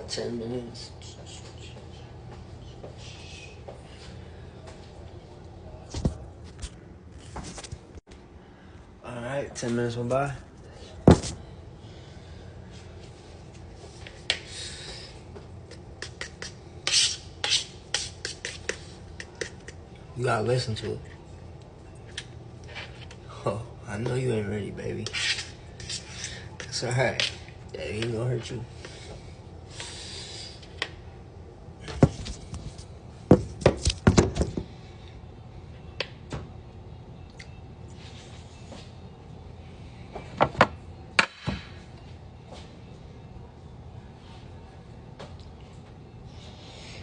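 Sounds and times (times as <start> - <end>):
scraping and rubbing strokes: 16.0 - 19.6, 25.0 - 26.2.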